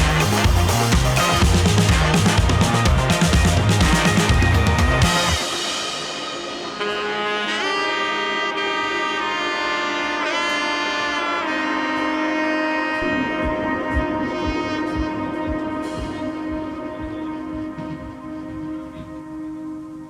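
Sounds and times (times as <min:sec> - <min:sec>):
light beat: 0:00.0 - 0:07.7, 0:13.0 - 0:20.0
melody of held notes: 0:00.0 - 0:20.0.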